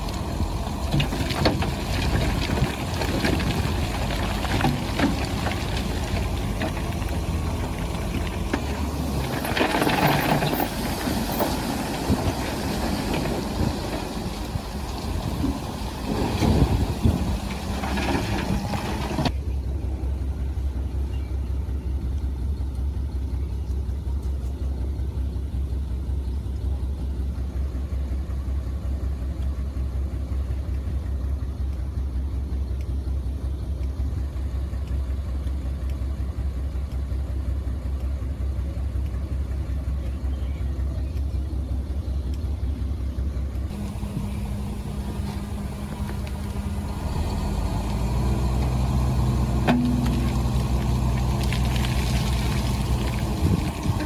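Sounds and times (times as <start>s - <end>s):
diesel engine humming: 0.0s - 54.0s.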